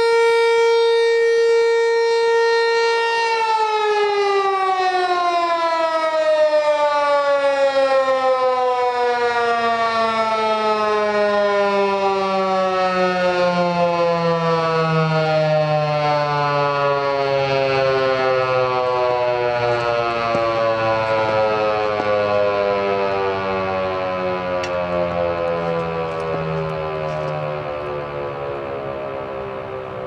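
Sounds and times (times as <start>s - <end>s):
warning siren winding down: 0.0s - 30.0s.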